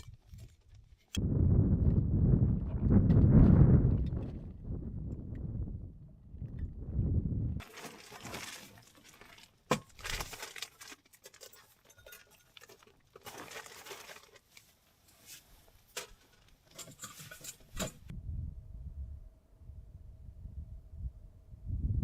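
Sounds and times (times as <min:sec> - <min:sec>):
material rustling and crinkling: 0:07.6 - 0:17.5.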